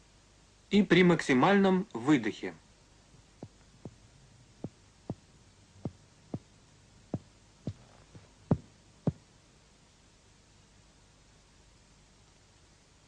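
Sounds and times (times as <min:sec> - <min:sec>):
finger tapping on chest: 0:03.4 - 0:04.0, 0:07.2 - 0:07.9.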